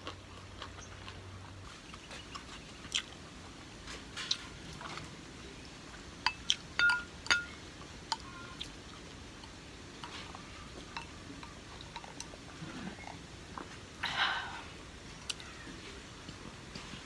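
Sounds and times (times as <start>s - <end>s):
utensils clinking against dish: 6.3s - 7.6s.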